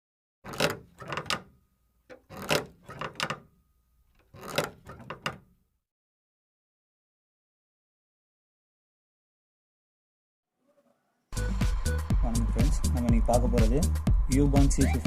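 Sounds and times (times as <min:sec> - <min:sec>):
scraping rubbing noise: 0:04.2 - 0:05.3.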